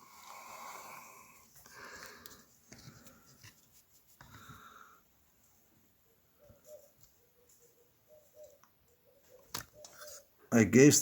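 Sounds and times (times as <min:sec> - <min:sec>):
person breathing close to microphone: 0:00.0 - 0:03.5, 0:04.2 - 0:05.2.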